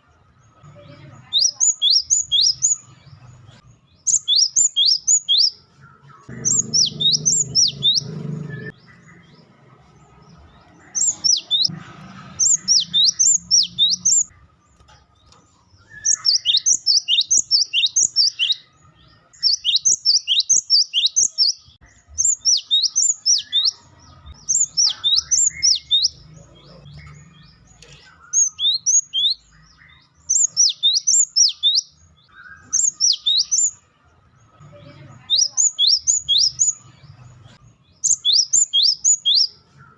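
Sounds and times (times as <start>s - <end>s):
tit singing high whistled notes: 1.4s - 2.8s, 4.1s - 5.6s, 12.4s - 14.3s, 15.9s - 18.7s, 24.5s - 26.2s, 28.3s - 33.8s, 35.4s - 36.8s, 38.0s - 39.6s.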